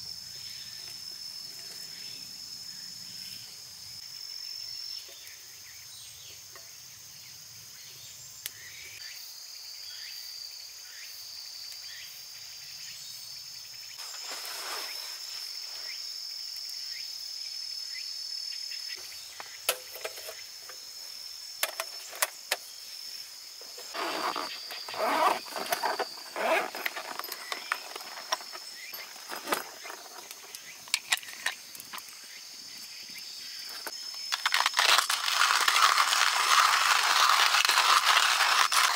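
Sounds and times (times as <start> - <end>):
insects chirring: 0.0 - 38.9
rustling and handling noise: 14.0 - 15.8, 23.6 - 32.0.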